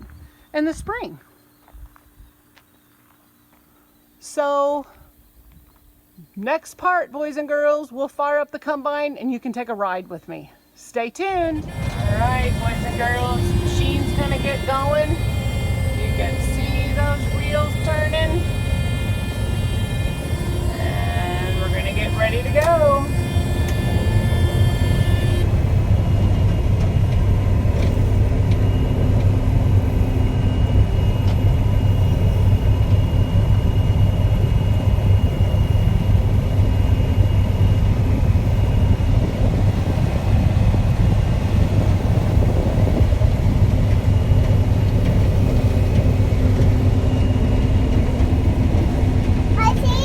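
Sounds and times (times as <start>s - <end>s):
combine harvester engine drone: 11.3s - 50.0s.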